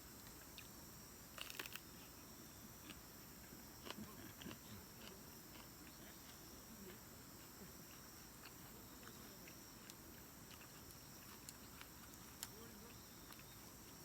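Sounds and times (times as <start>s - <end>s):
night insects chirping: 0.0s - 14.0s.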